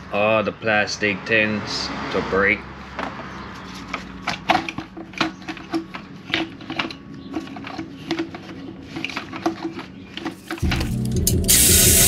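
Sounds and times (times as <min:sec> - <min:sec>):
hand tools clicking and knocking: 0:02.9 - 0:11.6.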